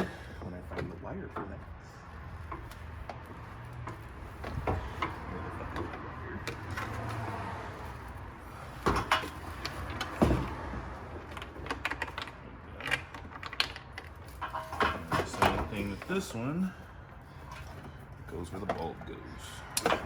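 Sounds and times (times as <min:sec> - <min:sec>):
plastic parts clicking and knocking: 0:08.8 - 0:16.1.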